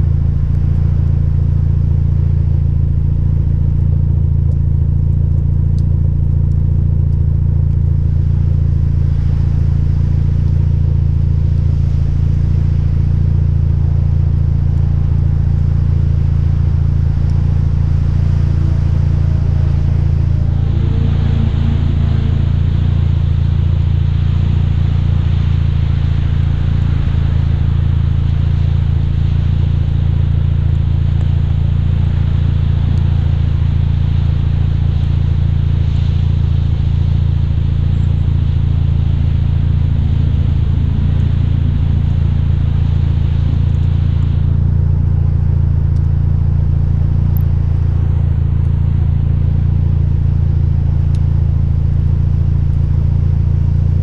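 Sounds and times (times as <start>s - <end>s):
car engine deep exhaust drone: 0.0s - 54.0s
high hiss: 17.4s - 45.6s.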